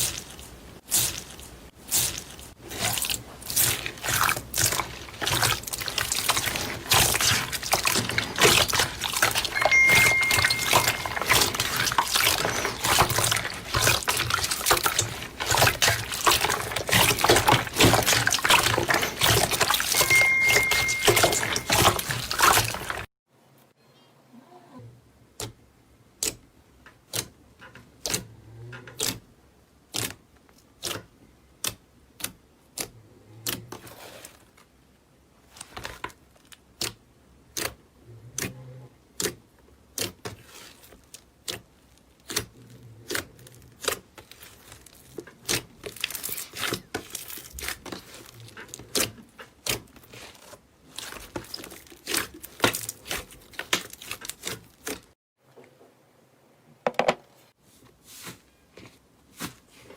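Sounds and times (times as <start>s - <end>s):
slime popping and crackling: 0.0s - 23.1s, 43.1s - 55.1s.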